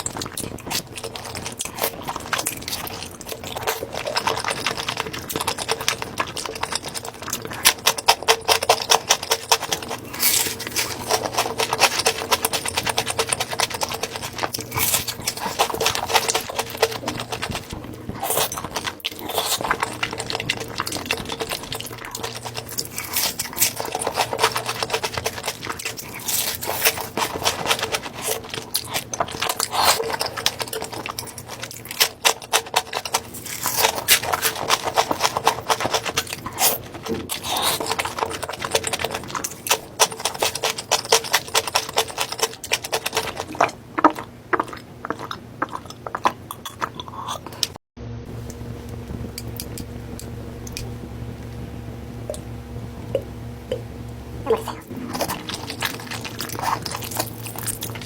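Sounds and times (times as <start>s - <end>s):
crunchy chewing: 0.0s - 47.8s, 54.4s - 58.0s
wet mouth sounds: 52.3s - 58.0s.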